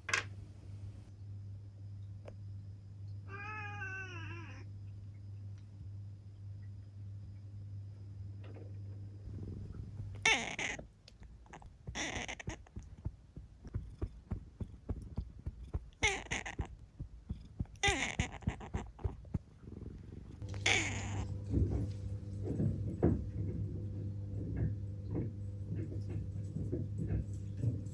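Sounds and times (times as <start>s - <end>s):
cat meowing: 3.3s - 4.7s, 10.2s - 10.8s, 11.5s - 13.0s, 15.9s - 19.4s, 20.5s - 21.3s
cat purring: 9.1s - 27.9s.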